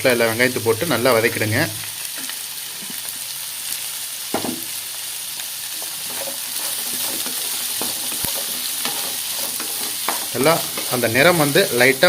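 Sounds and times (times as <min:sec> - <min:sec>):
onions sizzling in oil: 0:00.0 - 0:12.0
knock on a pan: 0:04.3 - 0:04.7
spoon scraping a pan: 0:05.7 - 0:11.9.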